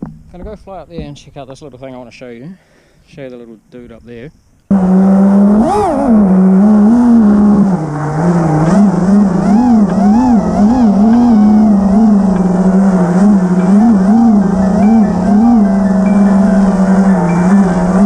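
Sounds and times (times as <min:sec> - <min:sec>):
quadcopter motors whining: 0:04.8 - 0:18.0.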